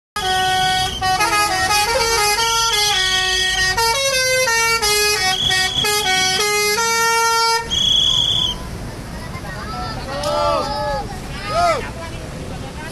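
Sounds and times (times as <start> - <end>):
bus musical horn playing melody: 0.2 - 8.6.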